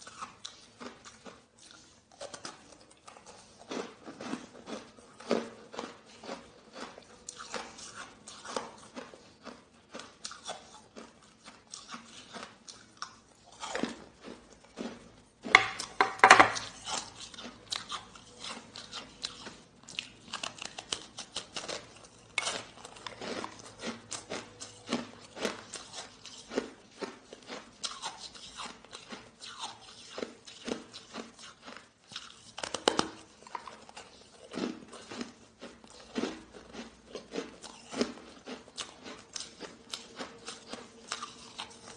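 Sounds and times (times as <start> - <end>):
ice being chewed crunching: 0.0 - 41.9.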